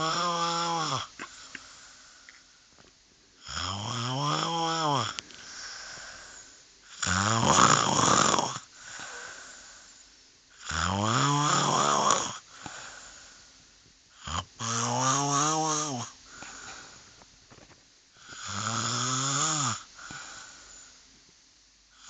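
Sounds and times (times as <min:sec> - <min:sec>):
man snoring heavily: 0:00.0 - 0:01.1, 0:03.4 - 0:09.6, 0:10.6 - 0:13.1, 0:14.2 - 0:16.7, 0:18.2 - 0:20.6
soft breaths: 0:00.0 - 0:10.6, 0:11.2 - 0:22.0.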